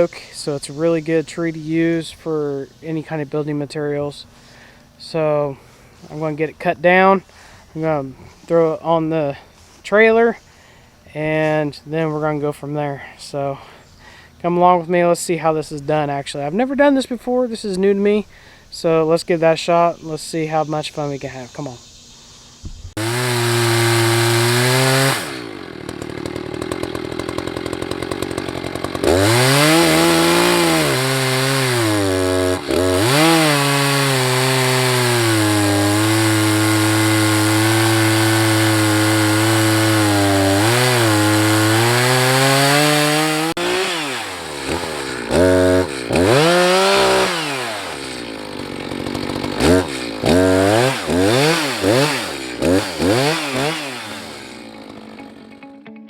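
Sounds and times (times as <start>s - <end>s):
chainsaw revving and cutting wood: 22.9s - 55.6s.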